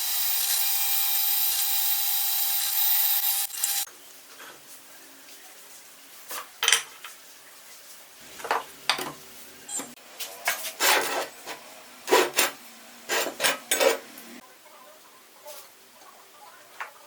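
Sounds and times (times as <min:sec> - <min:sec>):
metal tools scraping and clinking: 0:10.5 - 0:14.1.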